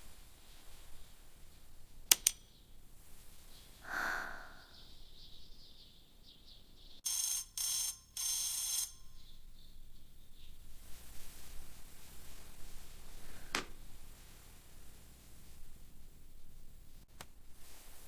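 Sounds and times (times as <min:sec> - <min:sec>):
sharp clicks: 0:02.1 - 0:02.4
alarm clock bell ringing: 0:07.1 - 0:09.3.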